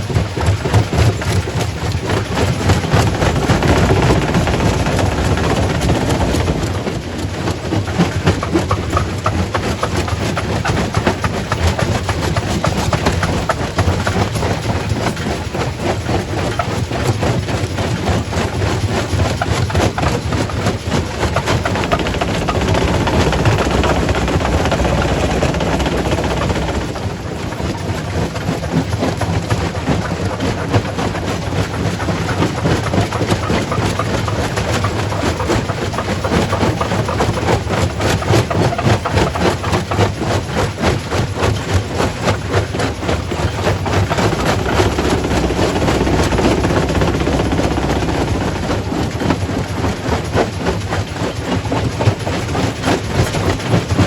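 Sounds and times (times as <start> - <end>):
low machine drone: 1.4 - 14.8, 19.4 - 28.8, 42.9 - 50.6.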